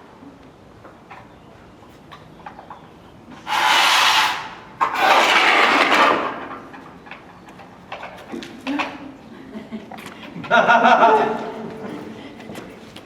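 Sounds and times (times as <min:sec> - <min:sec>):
harsh hissing rasping noise: 0:03.4 - 0:04.6.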